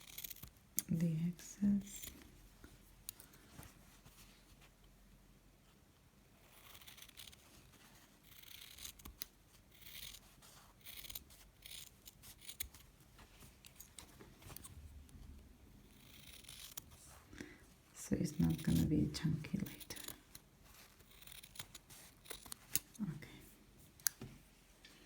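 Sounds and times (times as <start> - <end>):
scissors snipping fabric: 6.5 - 7.4, 18.3 - 18.9, 19.6 - 23.0.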